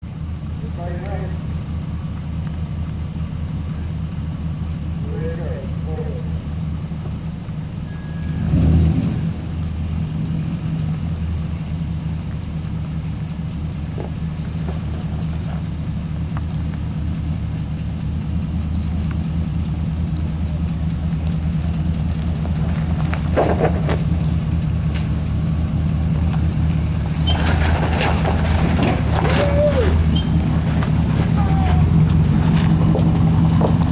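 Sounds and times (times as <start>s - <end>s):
truck engine running: 0.0s - 33.9s
knocks and clatters: 21.6s - 33.9s.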